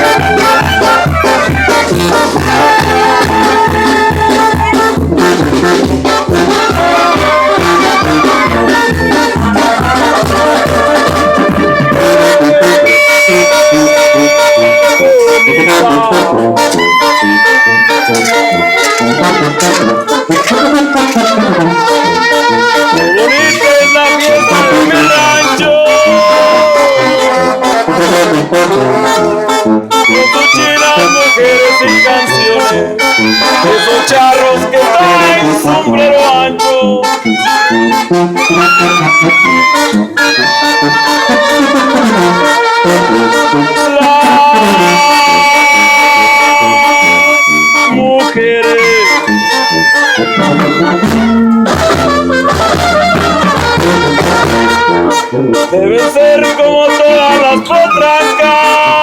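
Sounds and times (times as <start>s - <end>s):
brass band playing: 0.0s - 59.0s.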